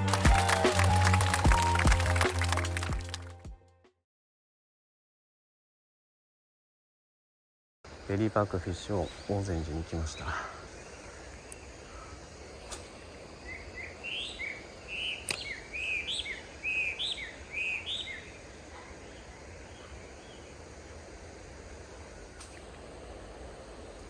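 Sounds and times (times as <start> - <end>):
outdoor background noise: 0.0 - 3.4, 7.8 - 24.0
small bird chirping: 8.4 - 20.6
sharp clicks: 15.2 - 15.6.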